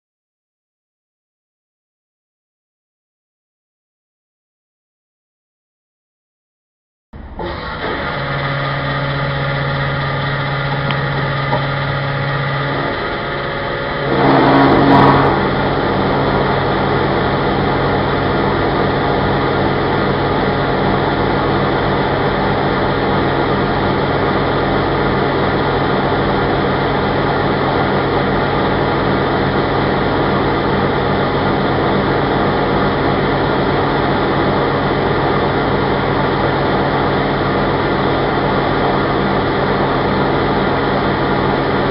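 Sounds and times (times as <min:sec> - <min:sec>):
fuel flowing: 0:07.2 - 0:37.5
petrol pump humming: 0:07.2 - 0:41.9.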